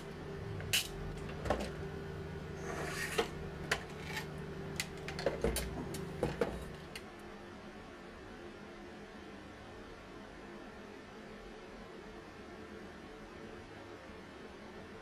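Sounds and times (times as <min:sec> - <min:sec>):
steady low hum: 0:00.0 - 0:07.8.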